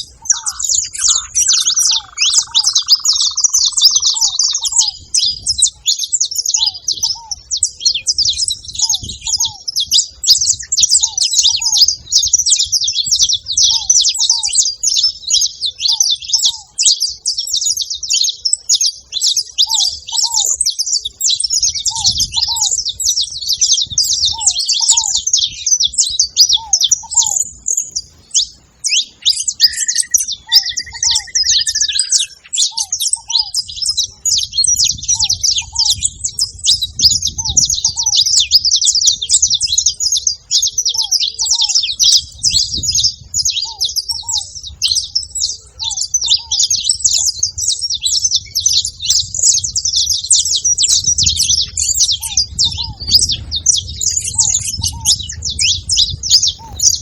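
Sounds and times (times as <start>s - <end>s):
finch chirping and singing: 0.0s - 57.0s
short lower bird call: 28.4s - 33.5s.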